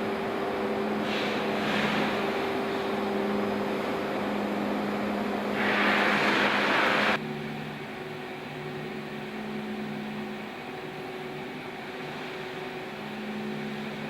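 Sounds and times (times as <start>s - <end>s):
industrial machinery hum: 0.0s - 14.0s
loud hiss: 5.6s - 7.2s.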